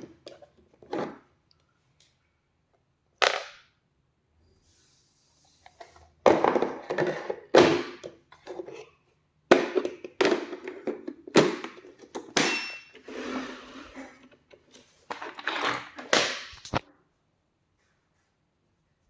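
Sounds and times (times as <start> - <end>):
scraping or rustling: 13.0 - 14.2.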